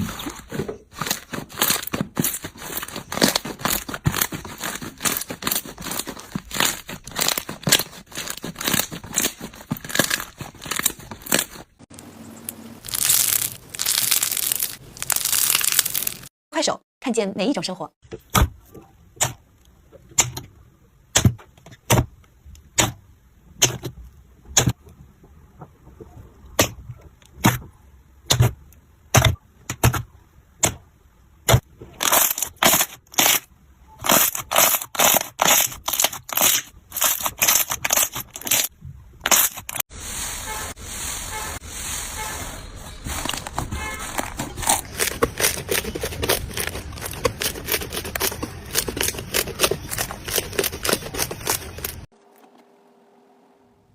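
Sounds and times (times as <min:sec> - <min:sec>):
slime squishing with pops and crackles: 0:00.0 - 0:11.8, 0:12.5 - 0:16.3, 0:26.0 - 0:38.7, 0:43.1 - 0:52.1.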